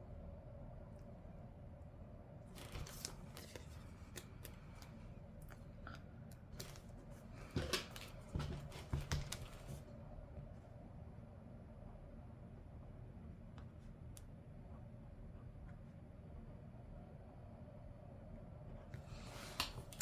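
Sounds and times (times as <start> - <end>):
paper crinkling: 2.5 - 5.0, 6.6 - 9.8
paper rustling and clicks: 2.6 - 5.0, 6.6 - 9.8, 19.2 - 20.0.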